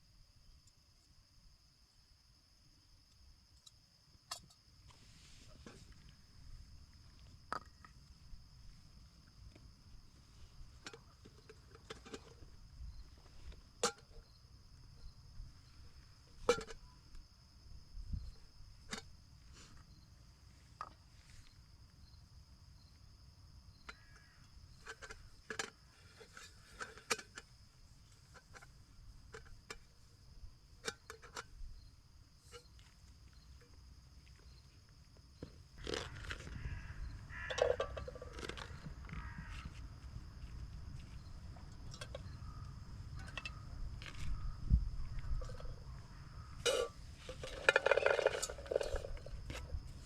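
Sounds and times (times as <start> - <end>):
faint high-pitched chirring: 35.4 - 50.0.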